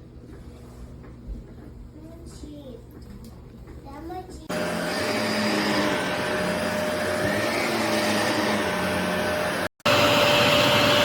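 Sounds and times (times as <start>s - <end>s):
vacuum cleaner running: 4.5s - 11.0s.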